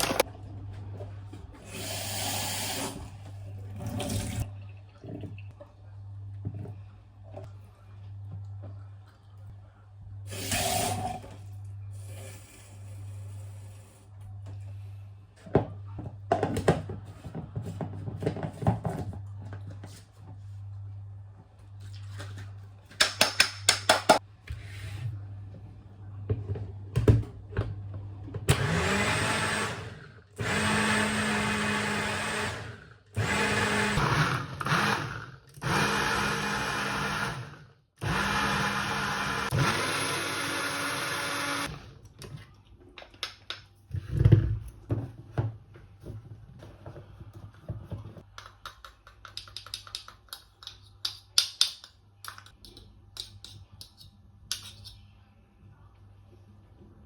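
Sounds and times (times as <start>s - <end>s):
blender motor running: 28.5s - 41.8s.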